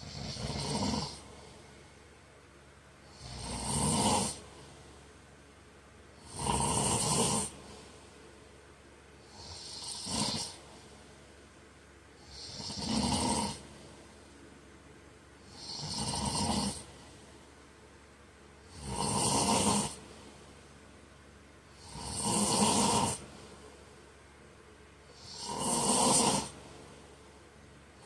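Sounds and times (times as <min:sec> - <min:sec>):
man snoring: 0:00.0 - 0:01.5, 0:03.0 - 0:04.5, 0:06.2 - 0:07.8, 0:09.2 - 0:10.7, 0:12.2 - 0:13.8, 0:15.4 - 0:17.1, 0:18.6 - 0:20.1, 0:21.7 - 0:23.3, 0:25.1 - 0:26.6.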